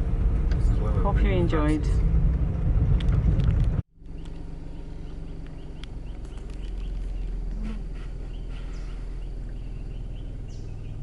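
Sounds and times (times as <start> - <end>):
vehicle engine idling: 0.0 - 11.0
high wildlife chirps: 4.0 - 11.0.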